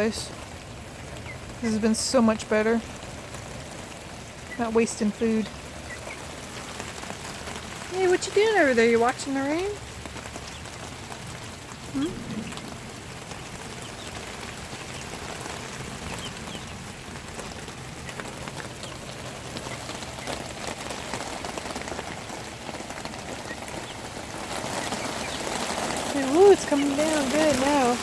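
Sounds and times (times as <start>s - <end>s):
steady rain falling: 0.0s - 28.0s
brief rising sound: 12.0s - 13.4s.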